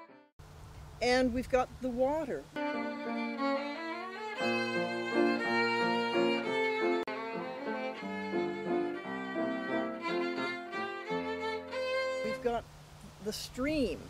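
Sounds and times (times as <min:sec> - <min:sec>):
violin melody with accompaniment: 0:02.6 - 0:12.6.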